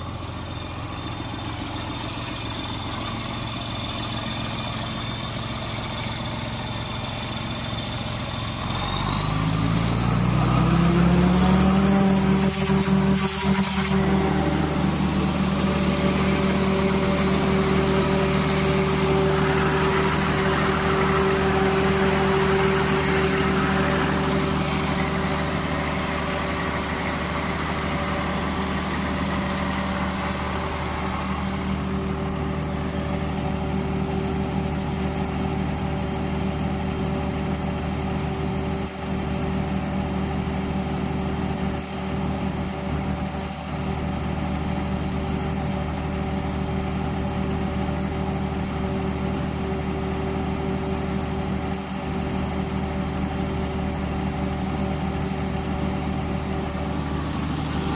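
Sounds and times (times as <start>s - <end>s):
diesel generator running: 0.0s - 57.9s.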